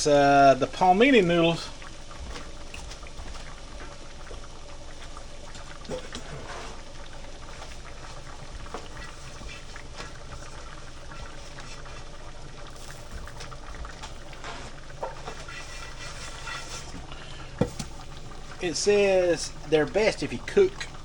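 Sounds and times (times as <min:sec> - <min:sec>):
food bubbling in a pan: 0:00.0 - 0:21.0
small pops and crackles: 0:17.0 - 0:18.6.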